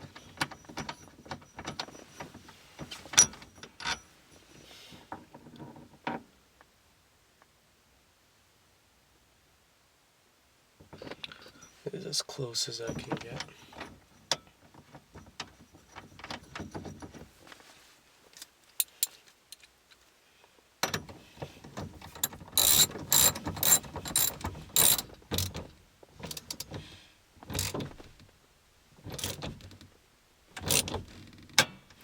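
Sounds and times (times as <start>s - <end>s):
ratchet wrench clicking: 22.1s - 25.6s.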